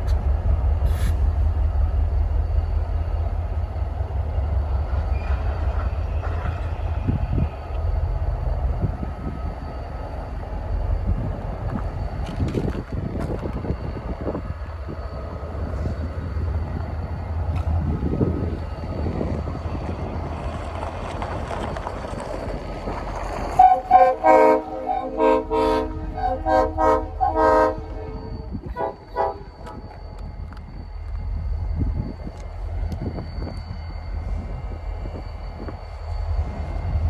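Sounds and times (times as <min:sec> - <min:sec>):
diesel locomotive rumble: 0:00.0 - 0:37.0
locomotive air horn blasts: 0:23.5 - 0:29.8.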